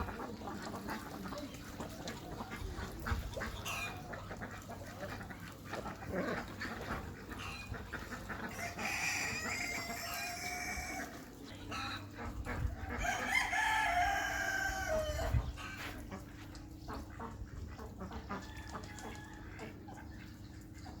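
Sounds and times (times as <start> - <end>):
chicken clucking: 0.0 - 21.0
rooster crowing: 8.5 - 11.1, 13.0 - 15.4.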